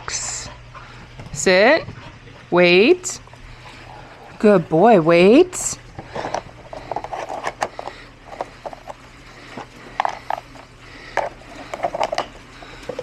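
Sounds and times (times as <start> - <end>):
puzzle box clicking and rattling: 6.2 - 10.5, 11.2 - 13.0.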